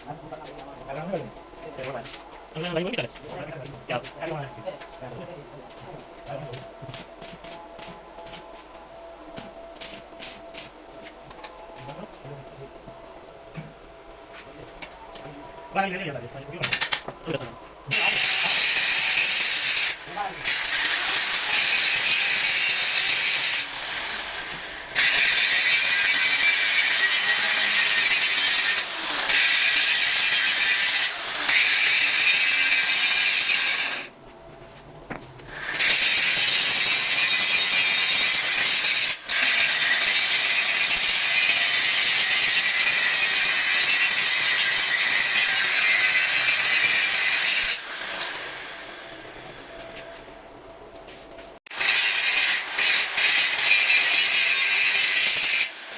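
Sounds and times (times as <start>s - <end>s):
angle grinder on steel: 17.9s - 34.1s, 35.5s - 50.1s, 51.7s - 55.9s.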